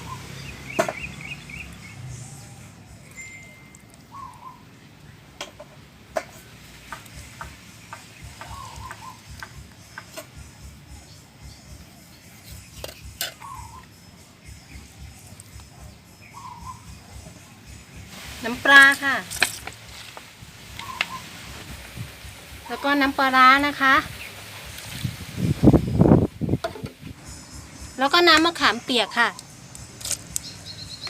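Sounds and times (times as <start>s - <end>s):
faint bird calls: 0.0s - 5.1s, 7.2s - 14.0s, 14.8s - 17.4s, 20.7s - 21.6s.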